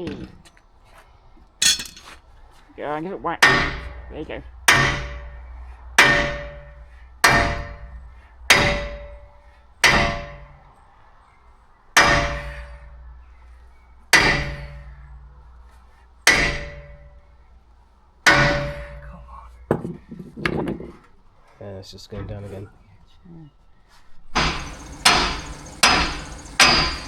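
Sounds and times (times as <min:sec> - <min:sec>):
heavy hammer blows on steel: 0:24.4 - 0:27.0.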